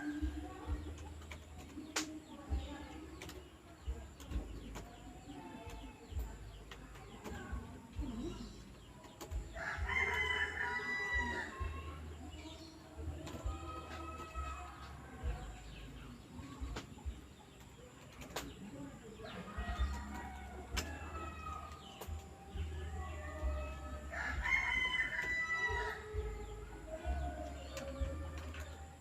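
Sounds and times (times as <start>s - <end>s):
rooster crowing: 24.1s - 26.2s.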